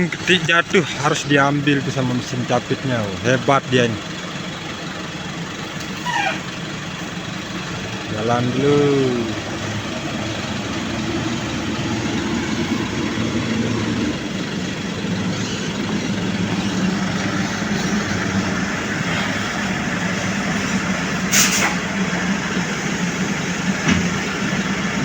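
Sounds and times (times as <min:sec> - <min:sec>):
heavy engine running: 0:00.0 - 0:25.0
short sharp hiss: 0:21.3 - 0:21.8.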